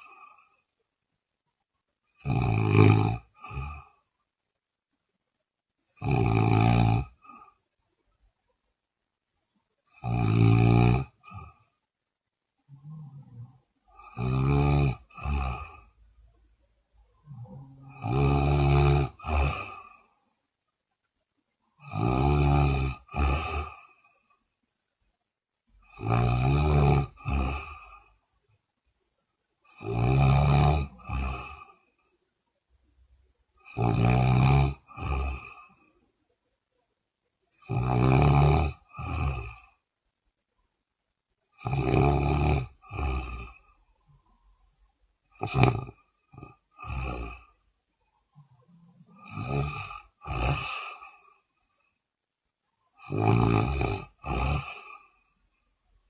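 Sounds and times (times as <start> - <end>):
woman snoring loudly: 2.2 - 3.9, 6.0 - 7.5, 9.9 - 11.6, 12.7 - 15.9, 17.2 - 20.0, 21.8 - 24.1, 25.8 - 28.1, 29.7 - 31.8, 33.6 - 35.9, 37.6 - 39.8, 41.6 - 43.7, 45.3 - 47.6, 48.4 - 51.4, 53.0 - 55.4.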